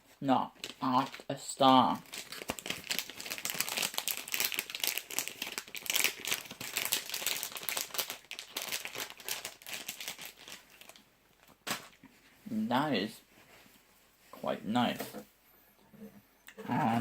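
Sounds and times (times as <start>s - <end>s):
plastic snack packet crinkling: 0.5s - 12.1s.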